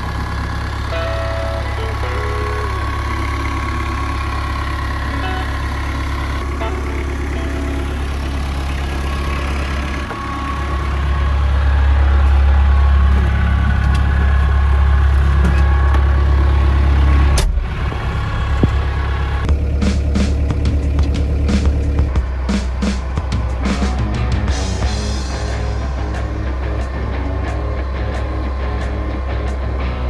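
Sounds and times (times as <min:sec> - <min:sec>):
diesel tractor engine running: 0:00.0 - 0:30.0.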